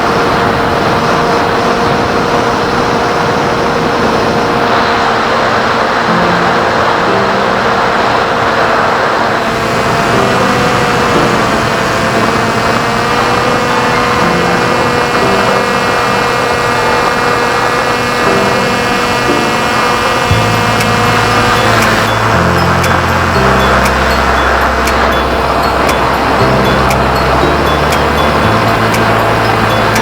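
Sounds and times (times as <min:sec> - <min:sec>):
electric motor whine: 0:00.0 - 0:30.0
propeller and wind rushing: 0:00.0 - 0:30.0.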